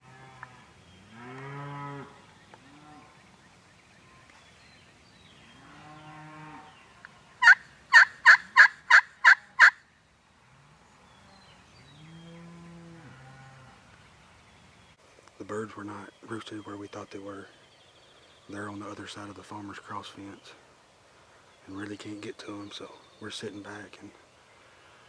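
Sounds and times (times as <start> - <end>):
cattle mooing: 5.6 - 6.8
sharp turkey calls: 7.4 - 9.8.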